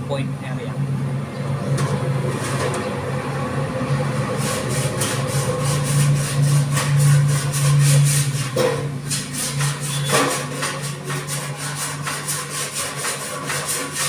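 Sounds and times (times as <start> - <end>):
low machine hum: 0.0 - 12.6
file rasping on steel panel: 4.3 - 14.0.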